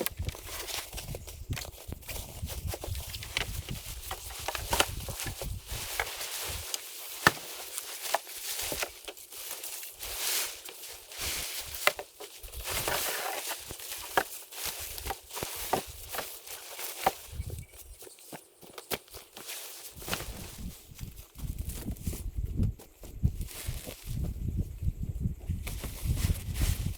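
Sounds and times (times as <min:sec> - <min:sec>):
footsteps crunching: 0:00.1 - 0:24.6.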